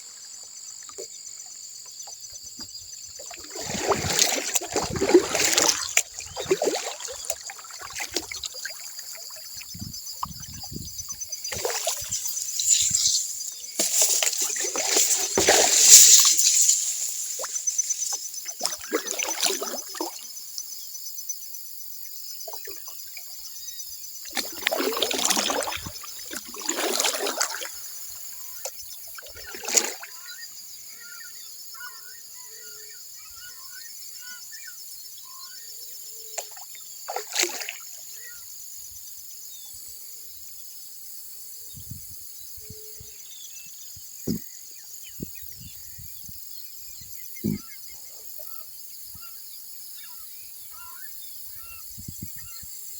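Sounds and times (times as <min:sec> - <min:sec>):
paddle strokes splashing water: 0:02.0 - 0:20.4, 0:24.2 - 0:30.4, 0:36.4 - 0:38.4
high-pitched insect drone: 0:08.6 - 0:20.8.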